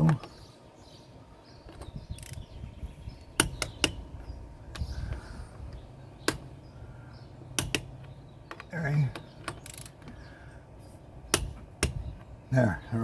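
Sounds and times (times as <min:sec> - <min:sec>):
low rattling handling: 0:01.6 - 0:10.3
torque wrench clicking: 0:02.2 - 0:02.5, 0:07.6 - 0:08.1, 0:09.4 - 0:10.1.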